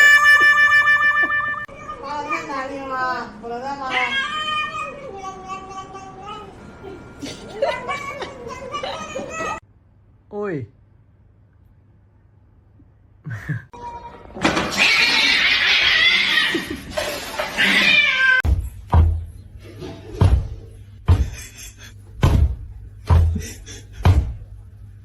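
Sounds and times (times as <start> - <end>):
cat harsh call: 14.7 - 16.7, 17.5 - 18.4
short dull thumps: 22.2 - 23.4.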